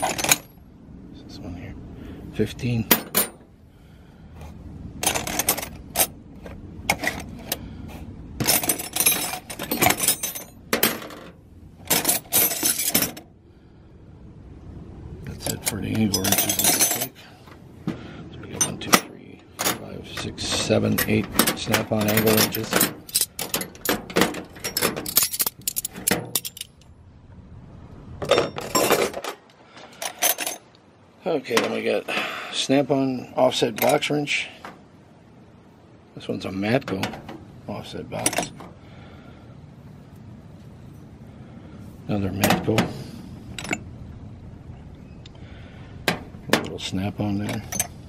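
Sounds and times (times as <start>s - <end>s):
metal wrenches clinking: 0.0s - 0.6s, 2.9s - 3.4s, 5.0s - 6.2s, 6.9s - 7.6s, 8.4s - 13.3s, 15.3s - 17.3s, 18.6s - 26.9s, 28.2s - 30.7s, 33.6s - 34.1s, 38.2s - 38.7s, 42.3s - 43.9s, 46.1s - 48.0s.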